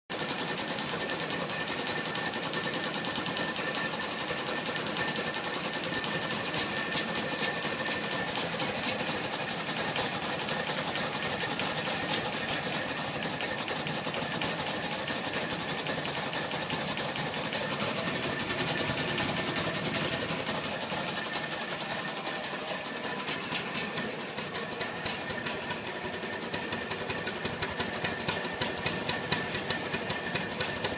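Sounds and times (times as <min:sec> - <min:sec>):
engine running with even clatter: 0:00.1 - 0:30.9.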